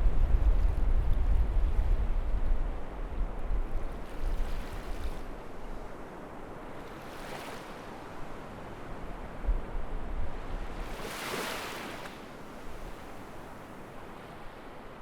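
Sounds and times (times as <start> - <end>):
wind rumbling on microphone: 0.0 - 5.8, 8.9 - 11.3
surf washing on a beach: 0.0 - 15.0.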